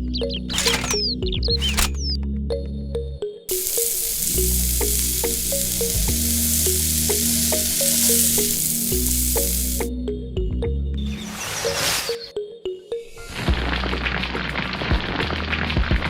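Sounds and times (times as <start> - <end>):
even hiss: 0.5 - 1.0, 3.5 - 9.9.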